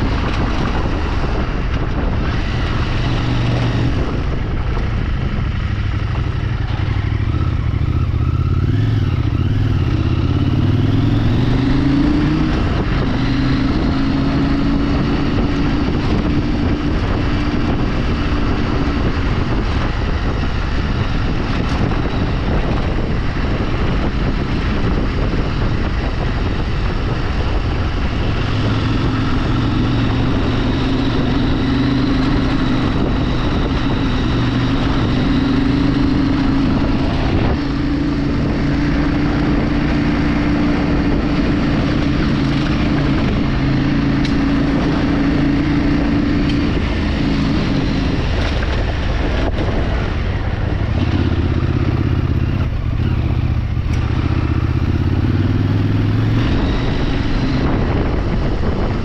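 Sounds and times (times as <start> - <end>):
steady rush of noise: 0.0 - 5.4
motorcycle engine running: 0.0 - 59.0.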